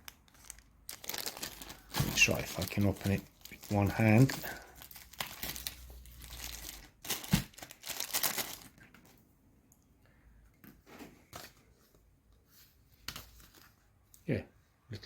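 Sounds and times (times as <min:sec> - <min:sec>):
plastic packet crinkled and torn: 0:00.0 - 0:09.2.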